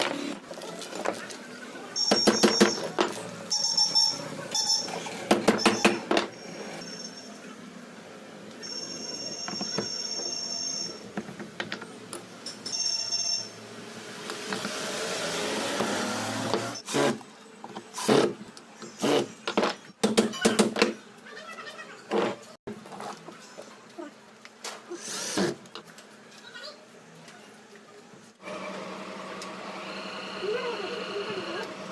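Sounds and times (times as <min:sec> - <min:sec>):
short high-pitched squeals: 0:03.5 - 0:07.5
fan whirring: 0:28.4 - 0:31.9.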